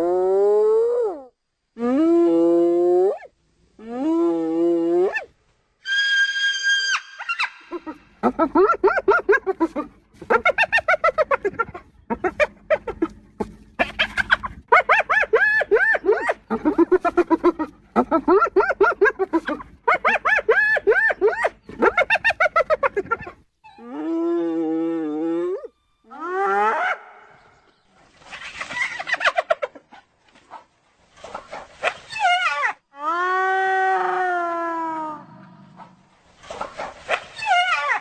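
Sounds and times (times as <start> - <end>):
hyena giggling: 7.6 - 23.5.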